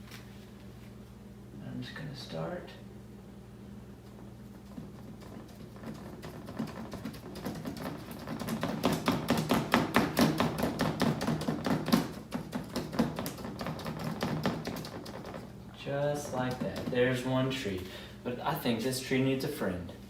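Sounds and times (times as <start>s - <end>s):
bristle brush tapping on paper: 4.7s - 15.5s.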